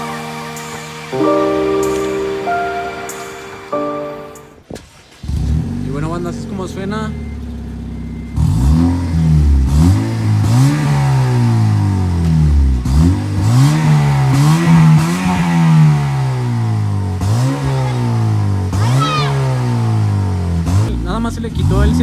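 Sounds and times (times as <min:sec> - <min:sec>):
car engine revving: 0:04.7 - 0:22.0.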